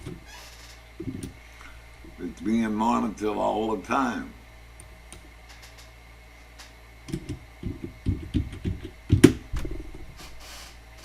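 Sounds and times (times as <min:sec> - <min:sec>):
steady low hum: 0:00.0 - 0:11.0
dull knocks and bumps: 0:01.0 - 0:01.3, 0:07.1 - 0:10.2.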